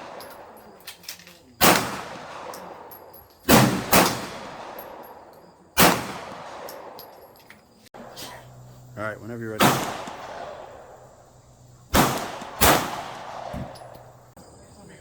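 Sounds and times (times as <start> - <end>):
gunshots with echoing tail: 0.0 - 0.6, 1.6 - 7.0, 9.6 - 11.1, 11.9 - 13.9.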